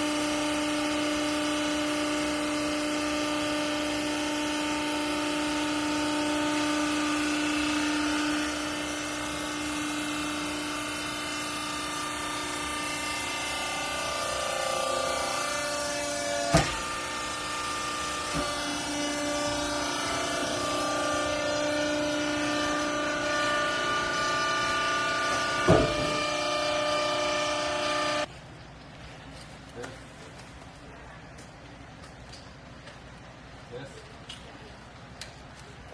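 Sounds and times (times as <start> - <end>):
hydraulic baler machine whine: 0.0 - 28.3
sharp bang: 25.4 - 26.5.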